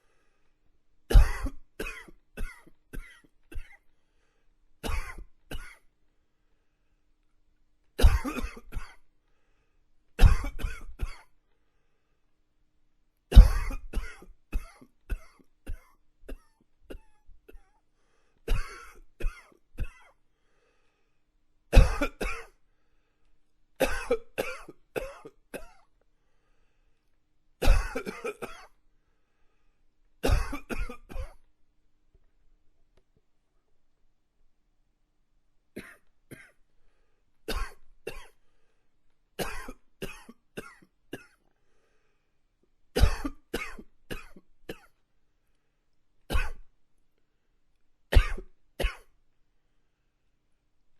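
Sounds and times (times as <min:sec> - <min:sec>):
man coughing: 0:01.1 - 0:03.8, 0:04.8 - 0:05.8, 0:08.0 - 0:09.0, 0:10.2 - 0:11.3, 0:13.3 - 0:17.7, 0:18.5 - 0:20.2, 0:21.8 - 0:22.6, 0:23.8 - 0:25.9, 0:27.6 - 0:28.8, 0:30.2 - 0:31.4, 0:39.4 - 0:41.4, 0:43.0 - 0:44.9, 0:46.3 - 0:46.7, 0:48.2 - 0:49.1.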